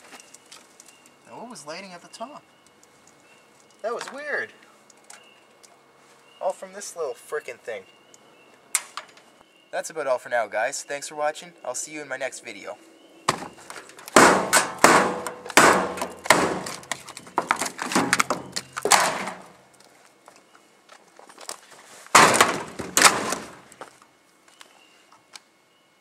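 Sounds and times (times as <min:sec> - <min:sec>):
loud crashing and clattering: 0:22.2 - 0:23.6.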